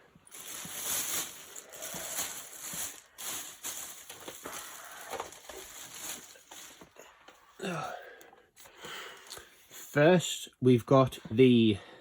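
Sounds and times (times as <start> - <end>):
handling noise rustling: 0.0 - 7.0.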